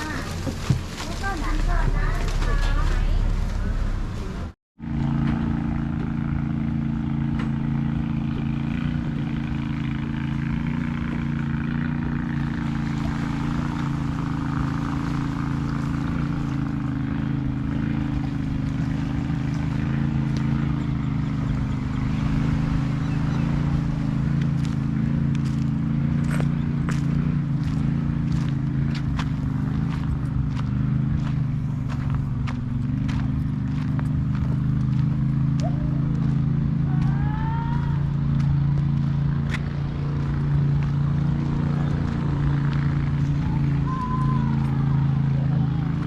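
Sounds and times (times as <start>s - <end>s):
engine idling: 0.0s - 46.0s.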